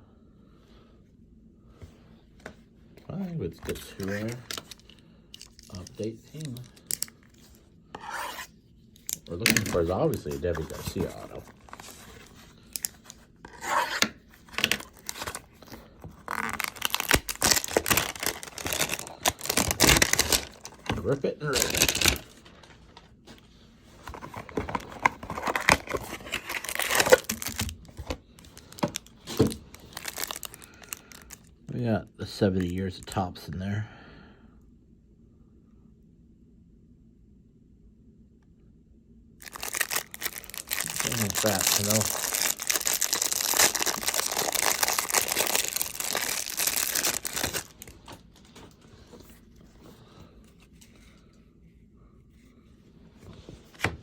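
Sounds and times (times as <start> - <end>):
wrapper tearing and crinkling: 9.0 - 22.8, 24.0 - 31.5, 39.4 - 48.6.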